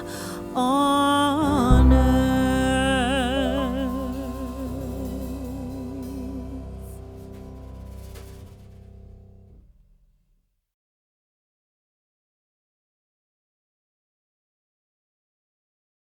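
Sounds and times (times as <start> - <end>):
background music with wavering note: 0.0 - 9.4.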